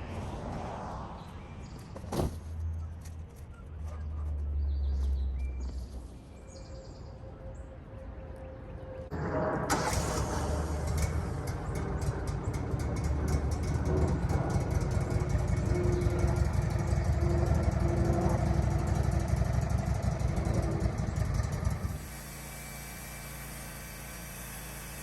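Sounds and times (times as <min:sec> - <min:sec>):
sawmill engine idling: 0:09.2 - 0:25.0.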